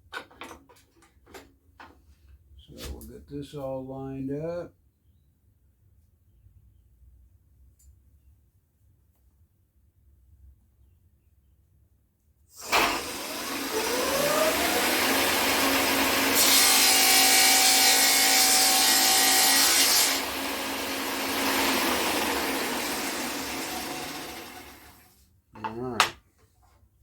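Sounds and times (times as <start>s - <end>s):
saw blade cutting wood: 12.6s - 25.0s.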